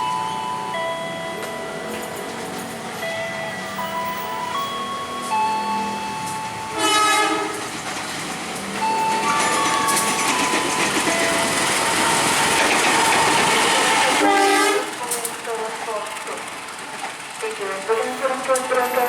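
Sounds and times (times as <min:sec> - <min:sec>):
train wheels rushing on rails: 0:00.0 - 0:19.0
train horn blast: 0:06.7 - 0:07.8, 0:13.6 - 0:15.0.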